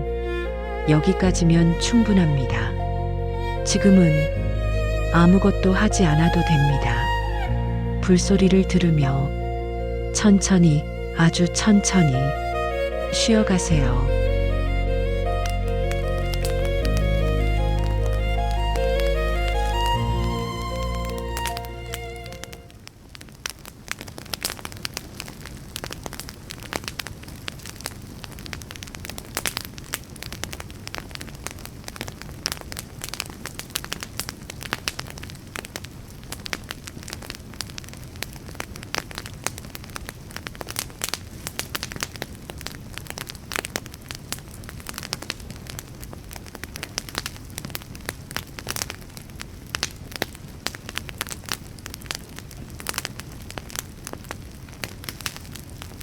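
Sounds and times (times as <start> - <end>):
low rumble of flames: 0.0 - 56.0
wood fire crackling: 0.2 - 56.0.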